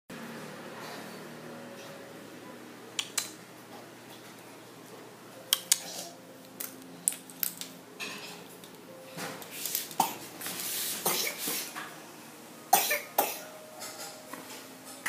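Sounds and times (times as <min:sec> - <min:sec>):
small hard objects clicking: 0:06.6 - 0:07.7.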